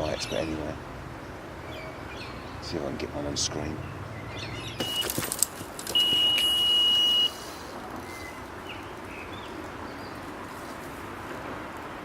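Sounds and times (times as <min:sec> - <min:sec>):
steady background hiss: 0:00.0 - 0:12.0
electronic bite alarm tone: 0:04.6 - 0:05.2, 0:06.0 - 0:07.4.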